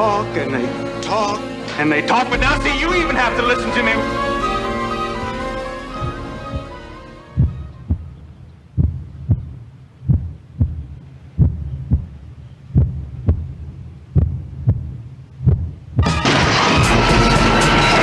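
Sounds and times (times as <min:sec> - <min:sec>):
low hum: 0:02.3 - 0:17.1
heartbeat thuds: 0:02.4 - 0:16.2.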